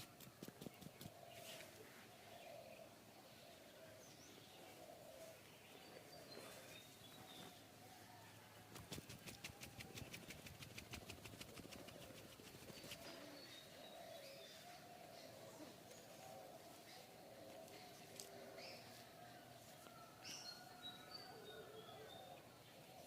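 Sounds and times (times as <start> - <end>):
rapid hand tapping massage: 8.9 - 12.5.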